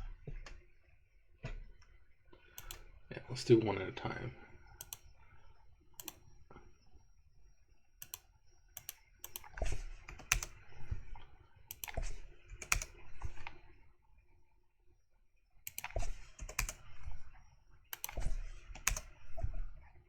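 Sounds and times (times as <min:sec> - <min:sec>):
computer keyboard key presses: 0:02.6 - 0:02.8, 0:04.8 - 0:05.1, 0:06.0 - 0:06.2, 0:08.0 - 0:09.5, 0:10.1 - 0:10.6, 0:11.7 - 0:13.0, 0:15.7 - 0:16.8, 0:18.0 - 0:19.1
mouse clicks: 0:02.6 - 0:02.8, 0:04.8 - 0:05.1, 0:06.0 - 0:06.2, 0:08.0 - 0:10.6, 0:11.7 - 0:13.6, 0:15.7 - 0:16.9, 0:17.9 - 0:19.5.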